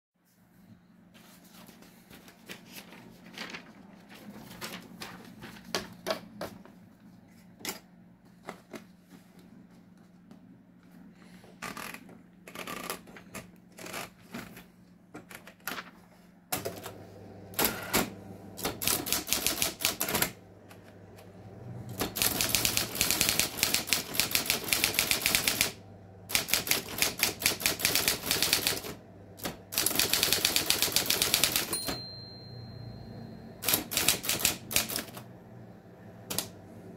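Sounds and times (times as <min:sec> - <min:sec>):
typewriter motor hum: 0:16.6 - 0:32.0, 0:33.6 - 0:35.3
typewriter keys striking: 0:17.6 - 0:20.4, 0:21.9 - 0:32.1, 0:33.6 - 0:35.2.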